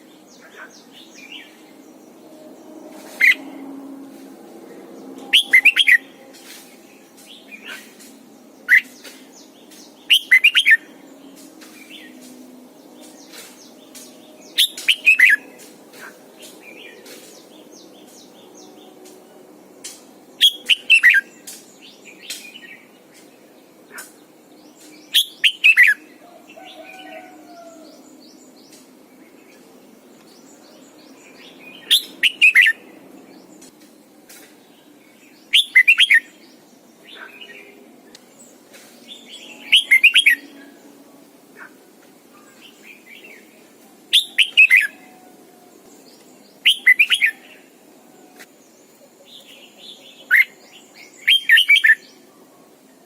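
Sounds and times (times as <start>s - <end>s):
soft bird chirps: 13.0s - 18.6s, 35.5s - 36.4s, 37.1s - 40.7s, 42.3s - 45.3s
bird singing whistled phrases: 46.6s - 47.4s.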